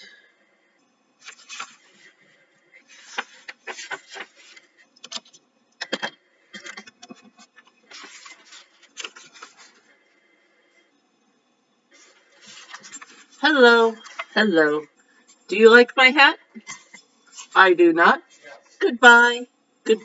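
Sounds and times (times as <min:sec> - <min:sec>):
book pages rustling: 0:01.2 - 0:02.1, 0:02.8 - 0:05.4, 0:06.6 - 0:09.9, 0:12.0 - 0:13.4.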